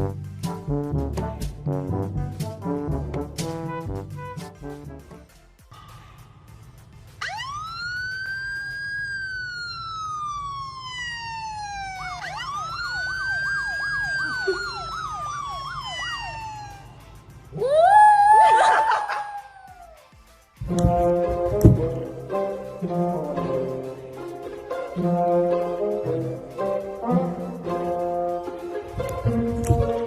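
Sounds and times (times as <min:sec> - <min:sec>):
rough siren tone: 0:07.2 - 0:17.1
emergency siren wailing: 0:07.2 - 0:20.0.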